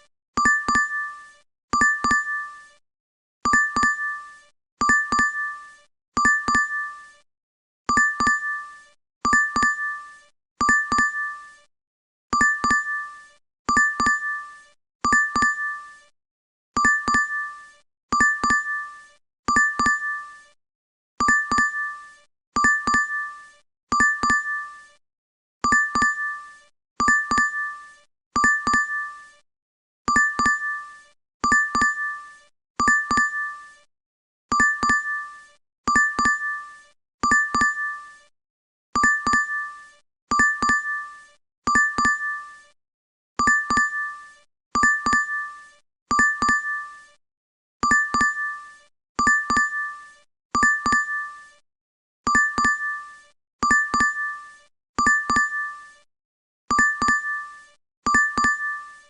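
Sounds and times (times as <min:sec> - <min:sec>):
double ding alert chime: 0:01.8 - 0:02.4, 0:03.5 - 0:04.1, 0:04.8 - 0:05.4, 0:06.2 - 0:06.8, 0:09.3 - 0:09.9, 0:10.6 - 0:11.2, 0:12.4 - 0:13.0, 0:13.7 - 0:14.3, 0:15.1 - 0:15.7, 0:16.8 - 0:17.4, 0:18.2 - 0:18.7, 0:19.5 - 0:20.2, 0:21.2 - 0:21.9, 0:22.6 - 0:23.2, 0:24.0 - 0:24.6, 0:25.7 - 0:26.2, 0:27.0 - 0:27.6, 0:28.4 - 0:29.0, 0:30.1 - 0:30.7, 0:32.8 - 0:33.5, 0:34.5 - 0:35.2, 0:37.2 - 0:37.8, 0:39.0 - 0:39.6, 0:40.3 - 0:40.9, 0:41.7 - 0:42.3, 0:43.4 - 0:44.1, 0:44.8 - 0:45.4, 0:46.1 - 0:46.8, 0:47.8 - 0:48.5, 0:49.2 - 0:49.8, 0:50.6 - 0:51.2, 0:52.3 - 0:52.9, 0:53.6 - 0:54.3, 0:55.0 - 0:55.7, 0:56.7 - 0:57.5, 0:58.1 - 0:59.0.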